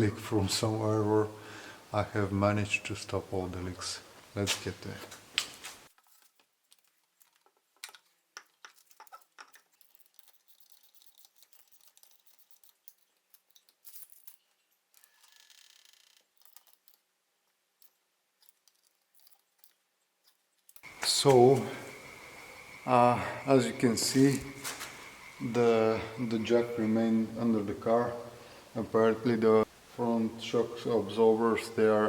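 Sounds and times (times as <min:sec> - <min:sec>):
soft hiss: 0:00.0 - 0:05.9, 0:20.8 - 0:32.0.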